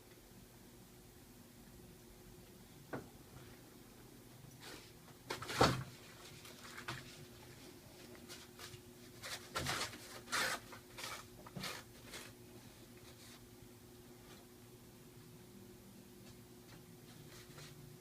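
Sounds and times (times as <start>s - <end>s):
toilet paper rustling and crinkling: 4.7s - 13.5s.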